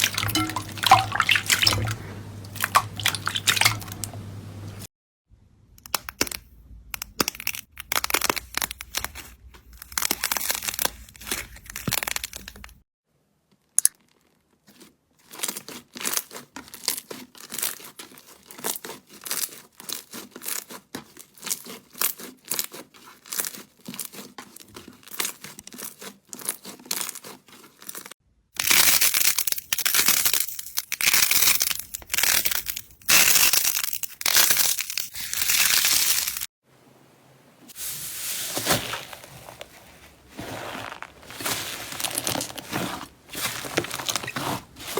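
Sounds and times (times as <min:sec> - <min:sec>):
slime crackling and clicking: 0:05.8 - 0:06.4, 0:07.0 - 0:12.7.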